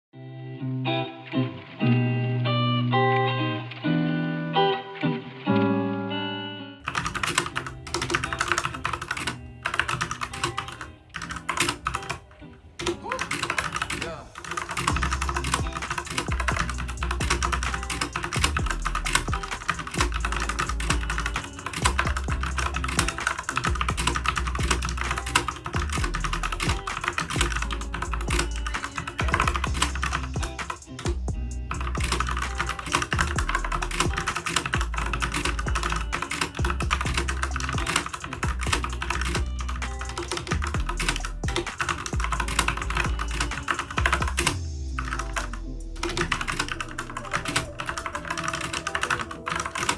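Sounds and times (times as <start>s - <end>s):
mechanical keyboard typing: 6.8s - 12.2s, 12.8s - 49.9s
background music with bass: 14.0s - 49.1s.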